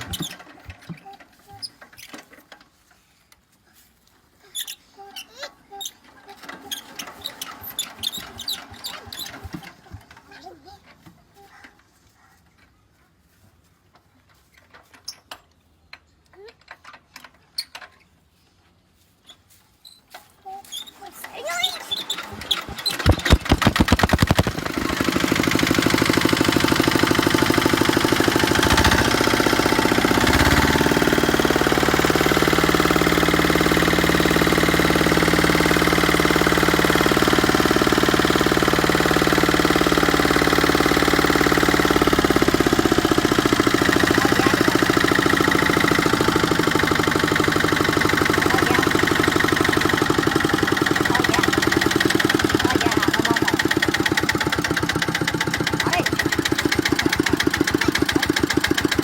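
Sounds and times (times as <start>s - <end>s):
tractor engine starting and running: 0.0s - 2.6s, 6.1s - 10.8s, 20.8s - 59.0s.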